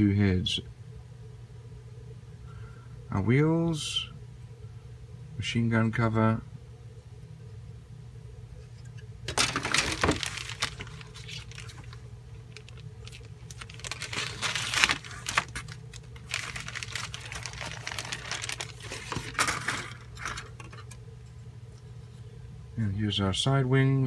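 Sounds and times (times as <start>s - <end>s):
low electrical hum: 0.0s - 24.0s
plastic bag crinkling: 9.3s - 21.0s.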